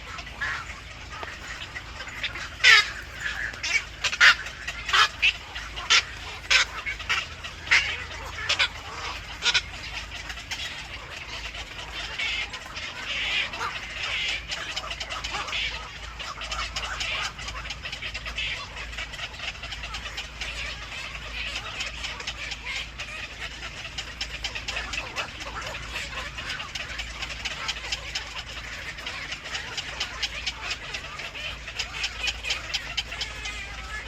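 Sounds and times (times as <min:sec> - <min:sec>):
birds chirping: 0:00.0 - 0:34.0.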